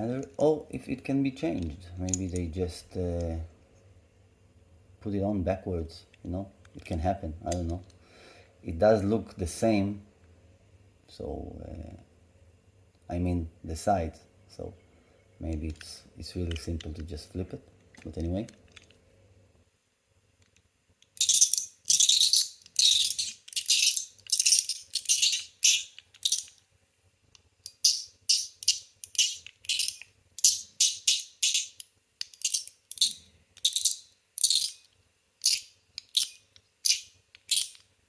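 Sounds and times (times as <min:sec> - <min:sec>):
metal fidget toy clacking: 0:21.2 - 0:26.6, 0:27.6 - 0:37.8.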